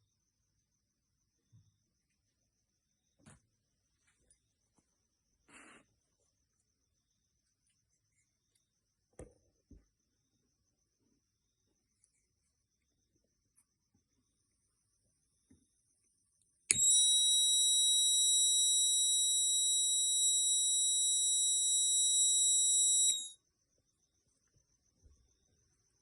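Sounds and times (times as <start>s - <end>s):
fire alarm high-pitched tone: 16.7s - 23.4s.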